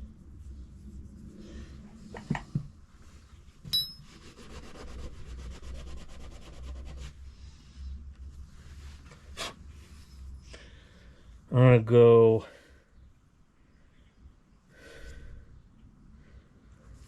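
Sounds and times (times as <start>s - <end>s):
metal clink ringing: 3.7s - 4.1s
fast rasping rub: 4.1s - 7.2s.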